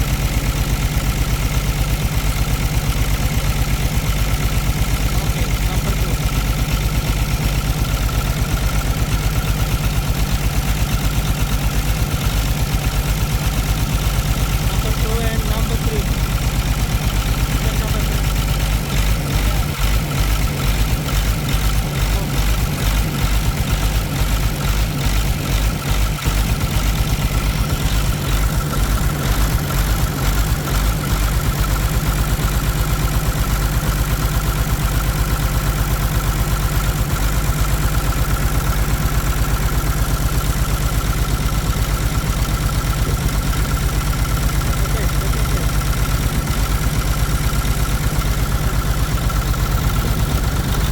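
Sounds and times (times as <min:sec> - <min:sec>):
diesel engine idling: 0:00.0 - 0:50.9.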